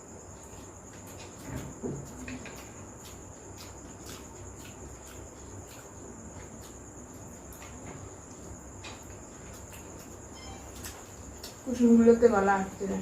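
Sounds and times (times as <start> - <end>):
insect chirring: 0.0 - 13.0.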